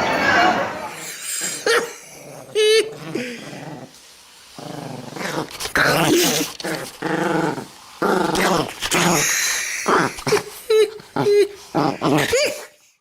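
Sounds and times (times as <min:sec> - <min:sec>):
dog growling: 0:00.7 - 0:12.8.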